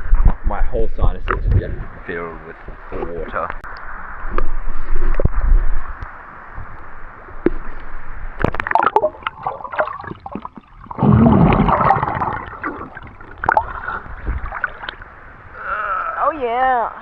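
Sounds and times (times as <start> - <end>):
water splashing and gurgling: 8.3 - 15.8.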